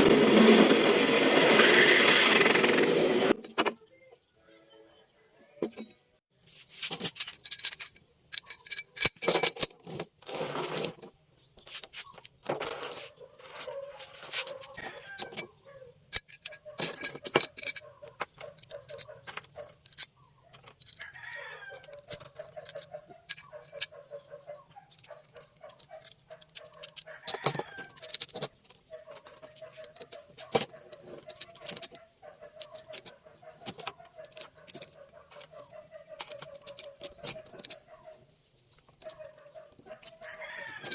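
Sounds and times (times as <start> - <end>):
steel tools clinking and clattering: 2.6 - 4.0, 5.6 - 40.9.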